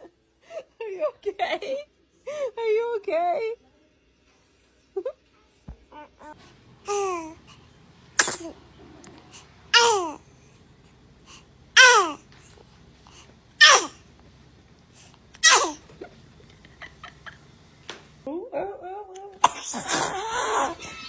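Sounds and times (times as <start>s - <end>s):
baby sneezing: 6.9s - 7.5s, 8.2s - 8.7s, 9.3s - 10.2s, 11.8s - 12.3s, 13.6s - 14.0s, 15.0s - 15.9s, 19.4s - 20.9s.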